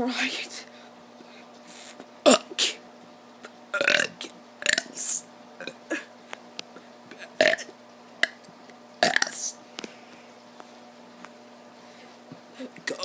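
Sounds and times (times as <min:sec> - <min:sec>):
child burping: 0:03.8 - 0:04.9, 0:05.6 - 0:06.1, 0:07.2 - 0:07.7.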